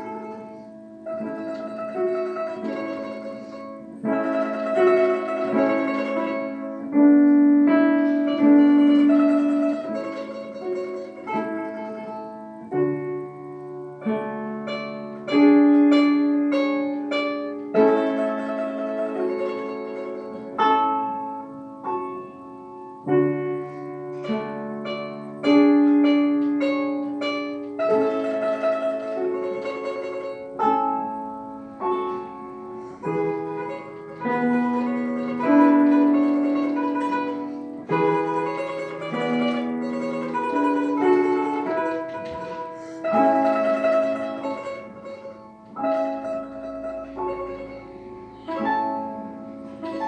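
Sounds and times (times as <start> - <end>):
plucked string instrument piece: 0.0 - 50.0.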